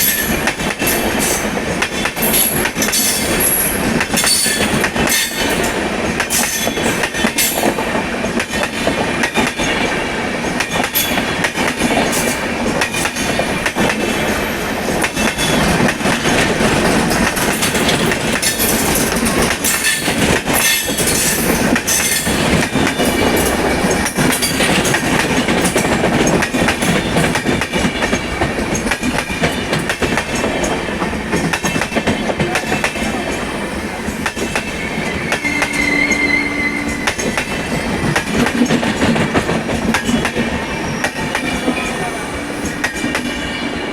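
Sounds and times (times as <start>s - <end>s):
train wheels rumbling: 0.0s - 43.9s
wheels clattering over rail joints: 15.0s - 33.3s.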